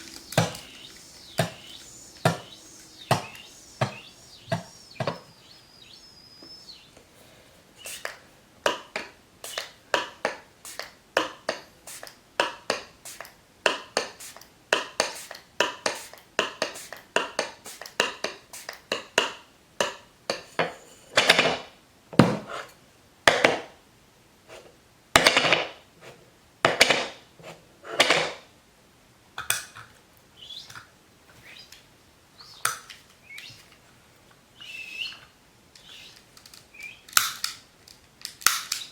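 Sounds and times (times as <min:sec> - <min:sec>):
longer noisy strokes: 0:00.0 - 0:06.8.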